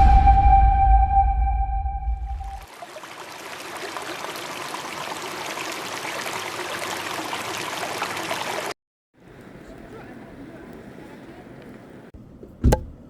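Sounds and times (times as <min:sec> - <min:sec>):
running water rushing: 0:02.6 - 0:08.8.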